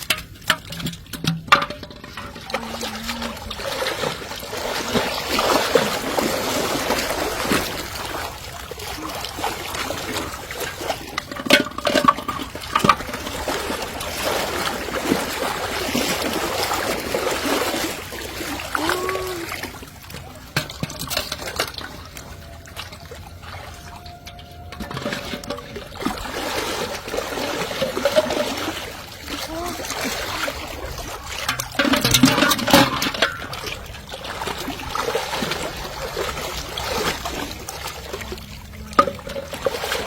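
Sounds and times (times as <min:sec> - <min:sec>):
river water splashing: 0:00.0 - 0:40.0.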